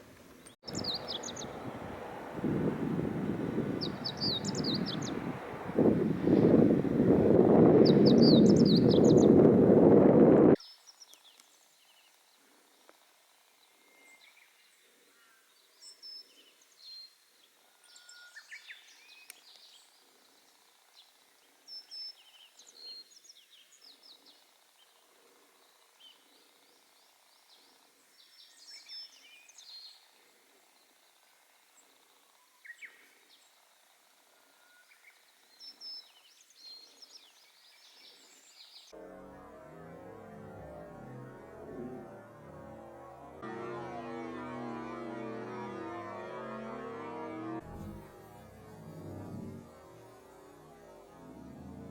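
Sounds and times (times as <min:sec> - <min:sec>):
songbirds chirping: 0:00.3 - 0:06.6.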